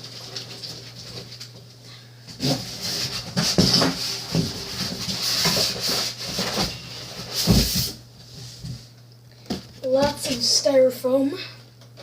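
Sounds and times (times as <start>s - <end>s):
styrofoam rubbing in cardboard box: 2.4s - 7.9s.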